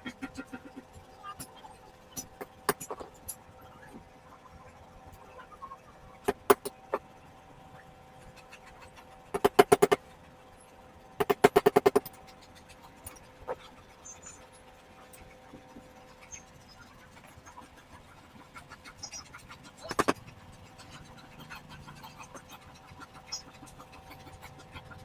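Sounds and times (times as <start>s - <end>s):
metal-on-metal tapping: 6.3s - 7.0s, 9.4s - 10.0s, 11.2s - 12.2s.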